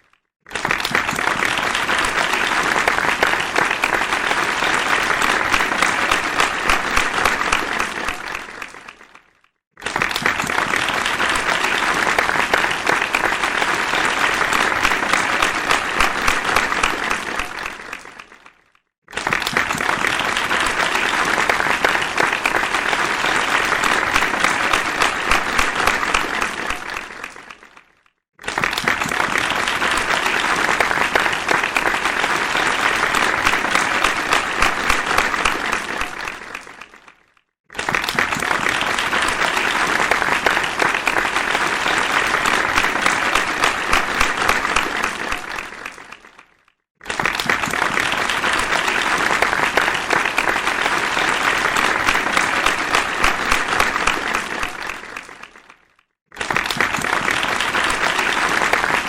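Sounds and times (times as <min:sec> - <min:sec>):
large crowd applauding: 0:00.0 - 0:59.0.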